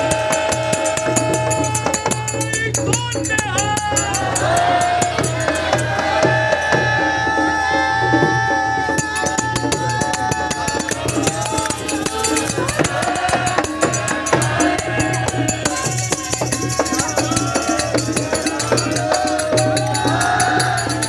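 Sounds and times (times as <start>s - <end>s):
group singing a hymn: 0.0s - 2.6s, 3.3s - 21.0s
hand drum beat: 0.0s - 21.0s
jingling percussion: 0.0s - 21.0s.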